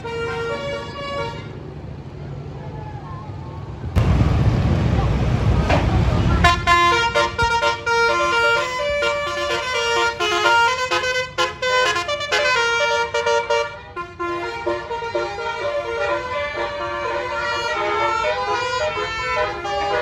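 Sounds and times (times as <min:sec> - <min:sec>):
multi-tone bus horn melody: 0:00.0 - 0:01.8, 0:06.3 - 0:20.0.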